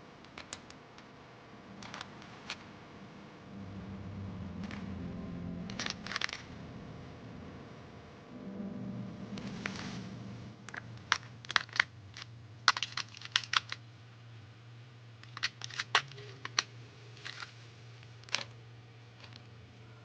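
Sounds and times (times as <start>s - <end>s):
low steady hum: 0.0s - 20.0s
small hard objects clicking: 10.7s - 13.8s, 15.2s - 17.5s.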